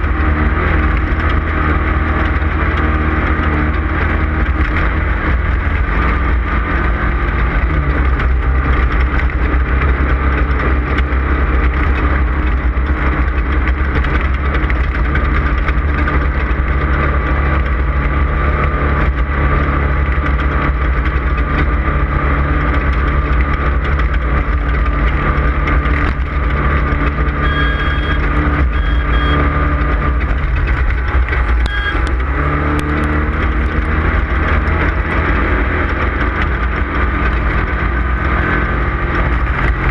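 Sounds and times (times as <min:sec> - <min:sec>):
race vehicle engine running hard: 0:00.0 - 0:39.9
wind and terrain rumble: 0:00.0 - 0:39.9
short electronic beeps: 0:27.4 - 0:29.6, 0:31.6 - 0:32.2.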